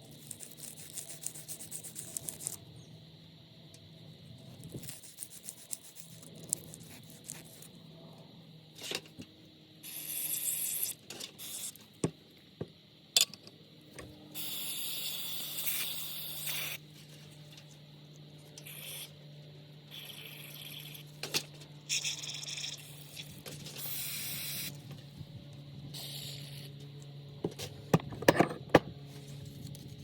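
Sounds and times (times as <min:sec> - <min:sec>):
spray hissing: 0:14.4 - 0:16.8.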